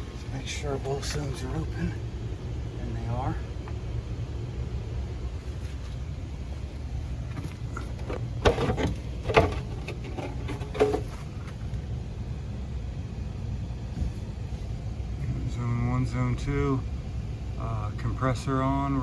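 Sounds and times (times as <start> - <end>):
heat pump humming: 0.0 - 19.0
handling knocks: 7.2 - 11.6.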